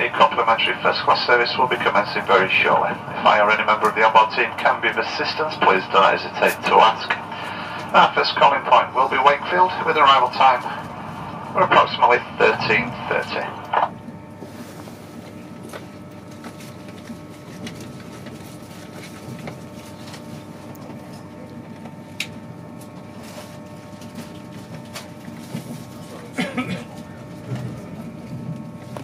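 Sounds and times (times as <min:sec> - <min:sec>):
faint steady hum: 0:00.0 - 0:19.1
train coach rumble: 0:00.0 - 0:22.0.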